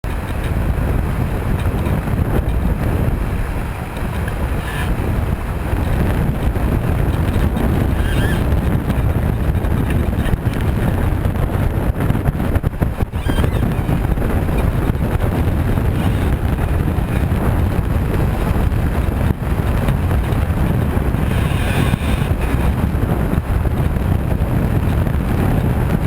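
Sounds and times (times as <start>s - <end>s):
water rushing along hull: 0.0s - 26.0s
wind buffeting microphone: 0.0s - 26.0s.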